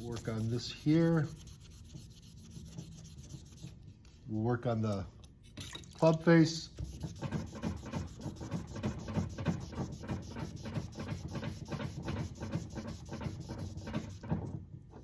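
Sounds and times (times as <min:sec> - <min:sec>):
sandpaper scraping on metal: 0:00.0 - 0:03.8, 0:06.8 - 0:14.3.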